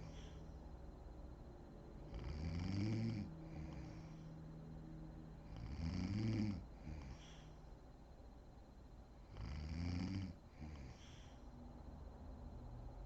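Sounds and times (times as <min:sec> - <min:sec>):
woman snoring: 0:02.2 - 0:04.0, 0:05.5 - 0:07.1, 0:09.4 - 0:11.0.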